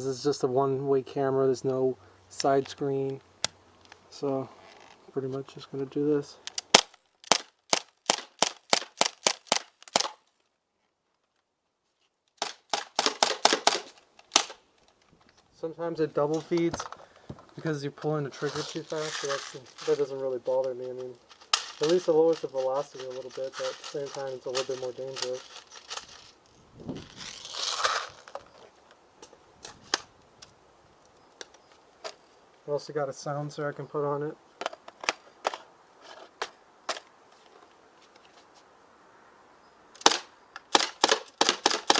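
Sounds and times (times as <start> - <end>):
sharp clicks: 6.4 - 10.2
rustling crinkling handling noise: 8.6 - 30.1
airsoft gun rapid shots: 12.7 - 14.5, 40.0 - 41.9.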